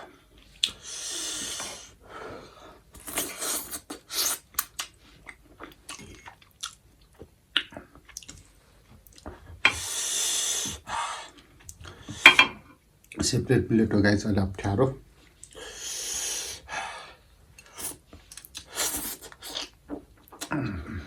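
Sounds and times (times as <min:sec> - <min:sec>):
airy sucks through mouth: 0:00.7 - 0:02.0, 0:09.7 - 0:10.9, 0:15.6 - 0:16.7, 0:17.7 - 0:18.0, 0:18.6 - 0:19.7
chewing noodles: 0:03.0 - 0:08.5
wet mouth clicks and smacks: 0:04.3 - 0:08.4.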